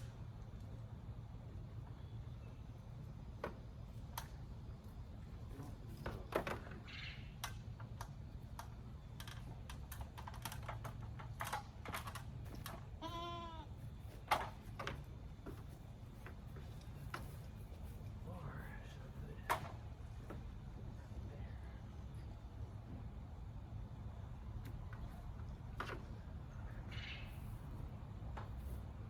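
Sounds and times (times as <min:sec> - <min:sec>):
low steady hum: 0:00.0 - 0:29.0
sharp clicks and knocks: 0:07.4 - 0:12.9
animal bleating: 0:13.0 - 0:13.8.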